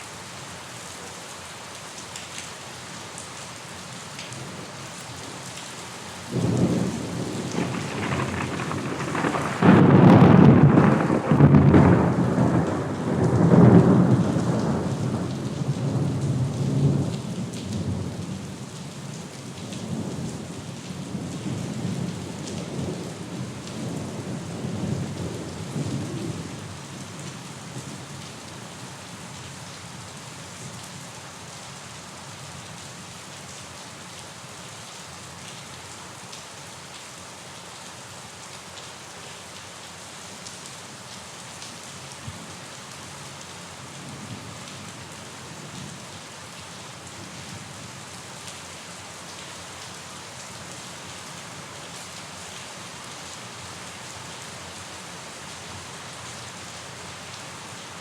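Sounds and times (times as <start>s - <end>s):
steady rain falling: 0.0s - 58.0s
thunder rumbling: 6.4s - 15.4s.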